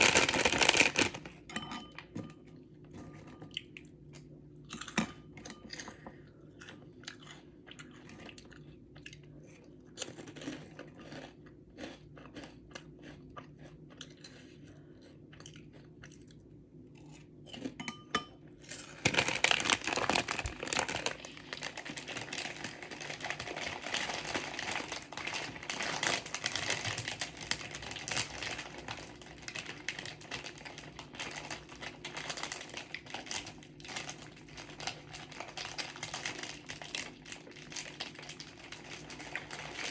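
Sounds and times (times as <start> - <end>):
continuous crackling noise: 0.0 - 1.3, 18.9 - 39.9
person chewing: 5.7 - 17.8.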